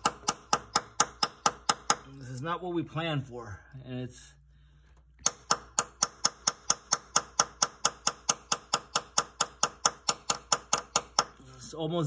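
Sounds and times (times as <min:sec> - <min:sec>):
hammer tapping on nail: 0:00.0 - 0:02.1, 0:05.2 - 0:11.4.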